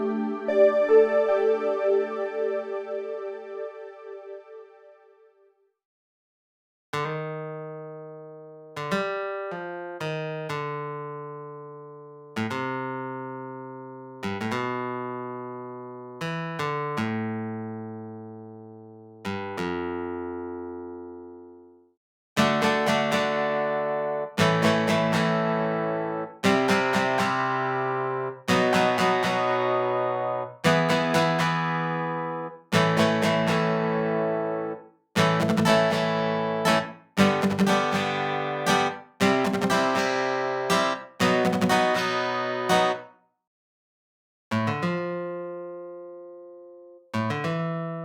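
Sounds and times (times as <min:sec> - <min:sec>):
synthesized guitar strumming chords: 0:00.0 - 0:05.1, 0:22.4 - 0:43.0
synthesizer chords: 0:00.0 - 0:05.2.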